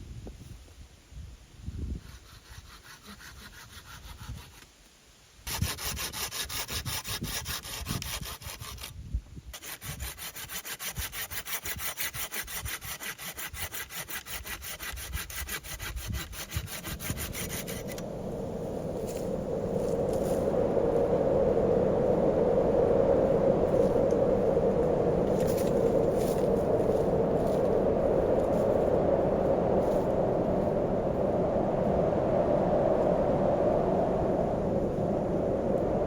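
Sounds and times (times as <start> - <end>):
hand saw cutting wood: 2.0 - 4.7, 5.5 - 18.0
rushing noise: 15.7 - 36.0.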